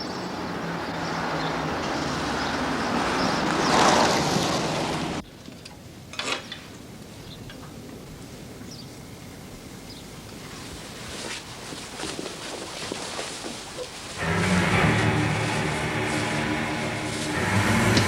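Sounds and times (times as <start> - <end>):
car engine and road noise: 0.0 - 5.2, 14.2 - 18.0.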